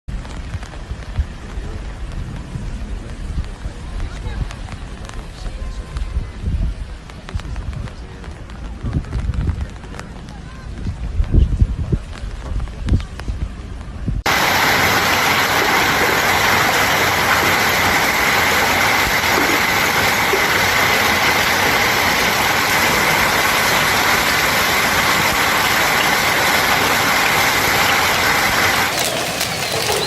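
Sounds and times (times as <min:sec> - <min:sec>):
heavy rain pouring: 0:00.1 - 0:10.4, 0:14.3 - 0:30.0.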